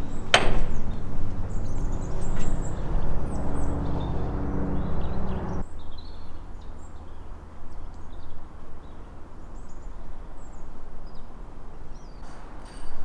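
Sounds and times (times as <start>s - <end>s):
loud low rumble: 0.0s - 5.7s
small birds chirping: 0.0s - 12.7s.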